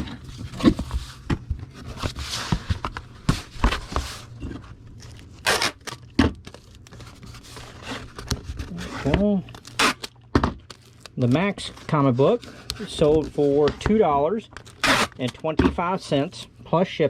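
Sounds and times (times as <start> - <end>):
packing tape ripping: 5.4 - 6.0, 9.5 - 10.1, 14.6 - 15.2.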